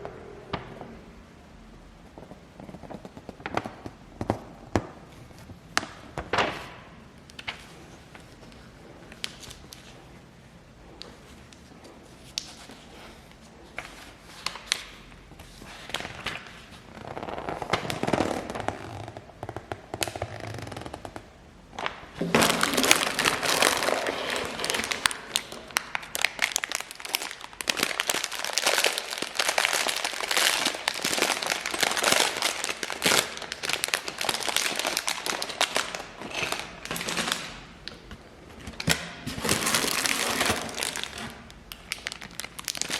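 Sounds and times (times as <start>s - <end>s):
plastic bags crinkling: 21.7s - 38.1s, 38.8s - 42.9s.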